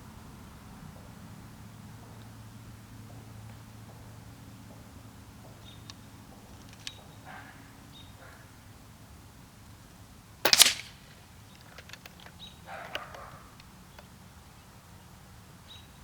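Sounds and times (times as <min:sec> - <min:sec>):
air rifle shot: 0:10.5 - 0:11.2
faint handling clicks: 0:10.5 - 0:14.1.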